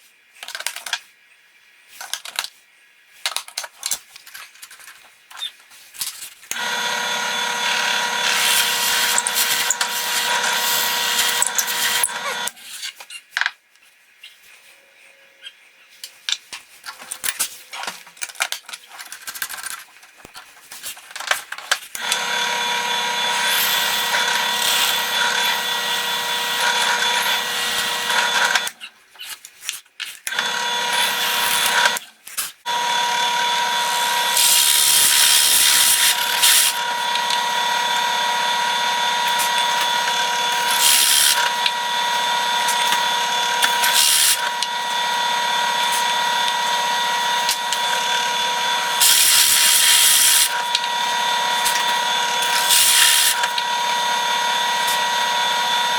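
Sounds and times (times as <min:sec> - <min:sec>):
power tool whining: 0:06.5 - 0:12.6, 0:22.0 - 0:28.8, 0:30.3 - 0:32.0, 0:32.6 - 0:55.9
hiss of cutting into wood: 0:33.9 - 0:37.5, 0:39.2 - 0:41.6, 0:42.7 - 0:44.6, 0:48.9 - 0:50.8, 0:51.6 - 0:53.6.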